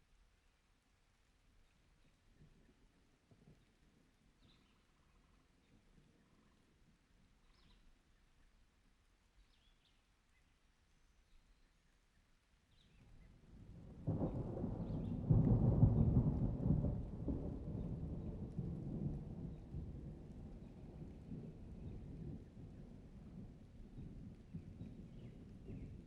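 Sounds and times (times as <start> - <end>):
thunder rumbling: 13.5 - 26.0.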